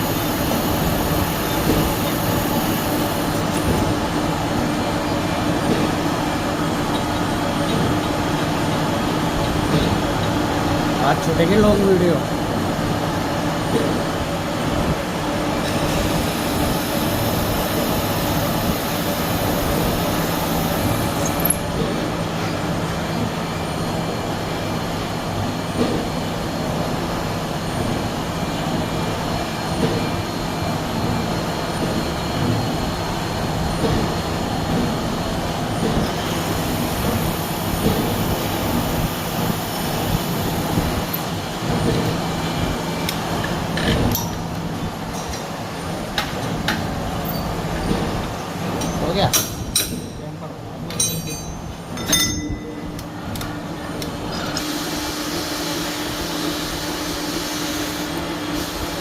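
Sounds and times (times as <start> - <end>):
milling machine rattling hum: 0.0 - 59.0.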